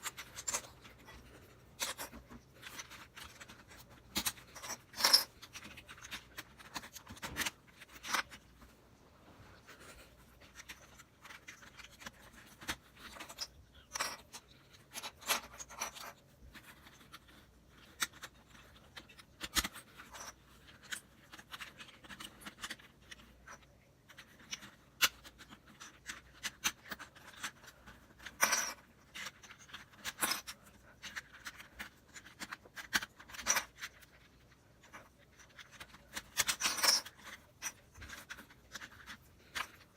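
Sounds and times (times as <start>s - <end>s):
plastic puzzle cube clicking: 10.4s - 39.9s.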